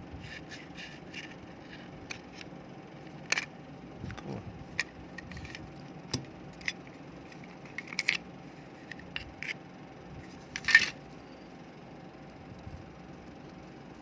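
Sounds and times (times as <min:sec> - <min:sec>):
plastic parts rattling: 0:10.5 - 0:11.0.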